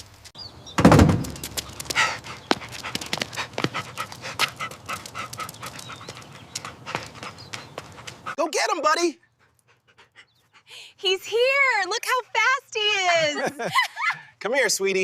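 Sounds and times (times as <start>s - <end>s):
loud low thud: 0.7s - 1.6s
dog panting: 1.6s - 8.4s, 9.2s - 11.0s.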